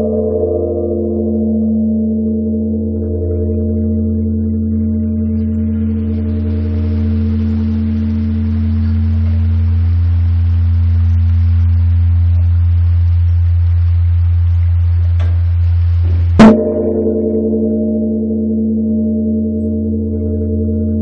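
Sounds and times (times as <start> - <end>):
steady hiss: 5.3 - 16.4
large bell ringing: 16.4 - 21.0.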